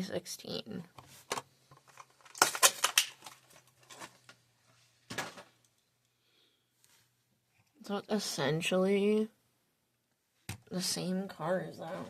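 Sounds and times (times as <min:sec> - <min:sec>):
plastic packaging crinkling and clicking: 0:01.2 - 0:04.4.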